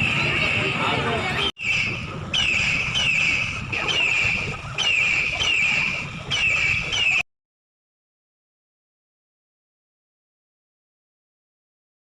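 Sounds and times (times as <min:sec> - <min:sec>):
high rising bird call: 0:01.6 - 0:07.2.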